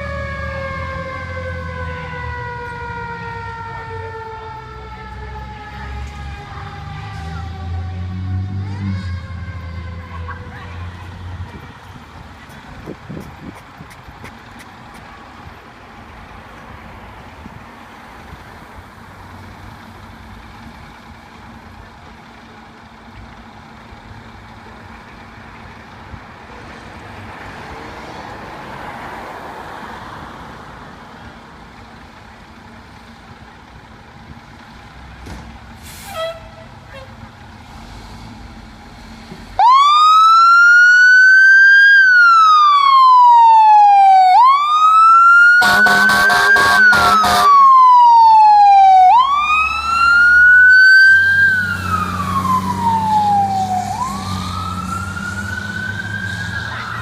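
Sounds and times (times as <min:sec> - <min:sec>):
fire truck siren wailing: 0:00.0 - 0:11.9, 0:39.6 - 0:57.0
traffic and engine rumble: 0:00.0 - 0:57.0.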